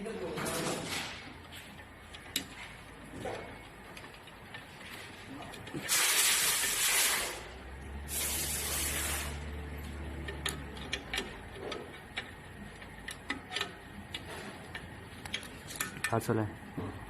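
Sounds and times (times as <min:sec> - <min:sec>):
hissing spray bursts: 0:05.9 - 0:07.5, 0:08.1 - 0:09.5.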